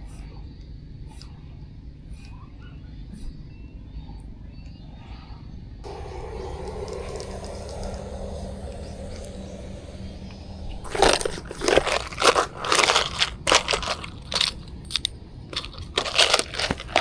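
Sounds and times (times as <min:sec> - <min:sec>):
steady low rumble: 0:05.8 - 0:17.0
loud irregular crunches: 0:10.9 - 0:17.0.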